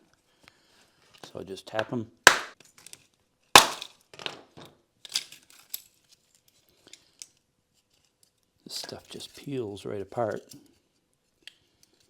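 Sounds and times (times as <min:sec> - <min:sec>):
rock cracking: 0:02.3 - 0:02.5, 0:03.6 - 0:03.8.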